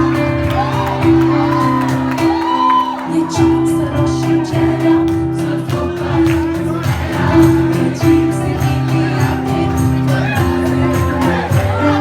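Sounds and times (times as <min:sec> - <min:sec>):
retro film song with singing: 0:00.0 - 0:12.0.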